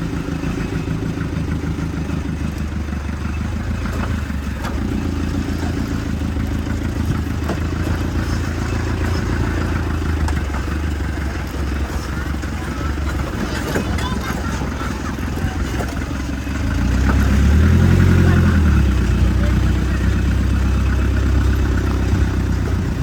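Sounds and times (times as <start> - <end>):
vehicle engine running: 0.0 - 23.0
vehicle knocks and rattles: 0.0 - 23.0.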